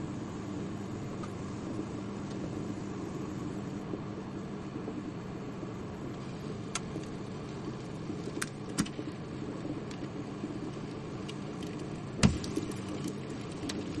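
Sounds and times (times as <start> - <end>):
microwave oven humming: 0.0 - 14.0
small crackles: 6.0 - 14.0
loud pop with low thump: 12.2 - 12.8.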